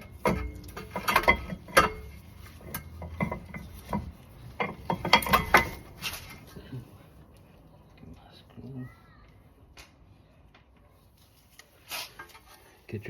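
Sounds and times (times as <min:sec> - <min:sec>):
sharp metal knocks: 0:00.0 - 0:06.0
metal clanks and clicks: 0:00.0 - 0:06.5.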